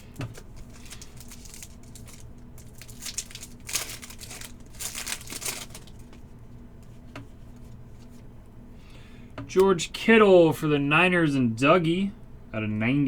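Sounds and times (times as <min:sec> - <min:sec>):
plastic wrappers crinkling and tearing: 0:00.0 - 0:06.3.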